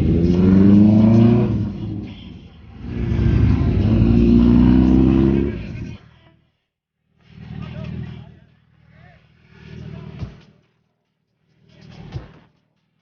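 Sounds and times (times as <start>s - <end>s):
motorcycle engine accelerating: 0.0s - 6.0s.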